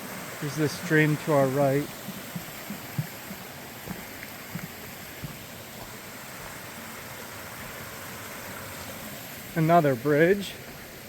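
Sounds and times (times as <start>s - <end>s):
stream rushing: 0.0s - 11.0s
soft footfalls: 1.8s - 6.6s.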